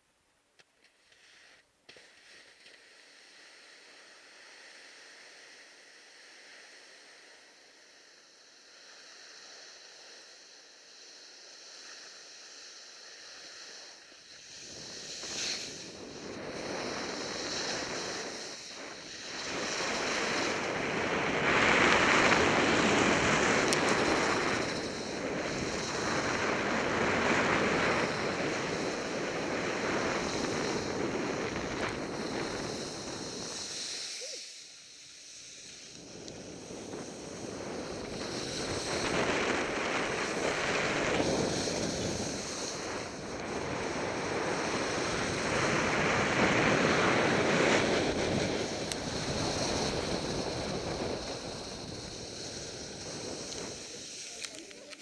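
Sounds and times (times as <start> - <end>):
wind rushing over microphone: 14.3 - 34.2, 35.6 - 54.9.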